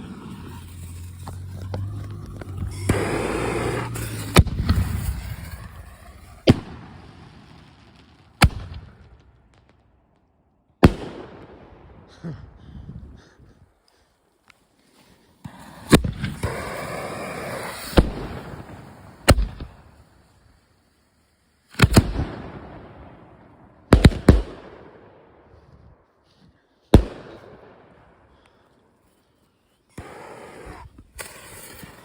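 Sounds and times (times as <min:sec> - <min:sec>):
fireworks loud hiss: 0:00.0 - 0:07.8, 0:14.8 - 0:22.5, 0:29.9 - 0:32.0
fireworks bangs with echoing rumble: 0:00.0 - 0:09.9, 0:10.8 - 0:12.2, 0:15.4 - 0:20.1, 0:21.8 - 0:25.5, 0:27.0 - 0:28.4.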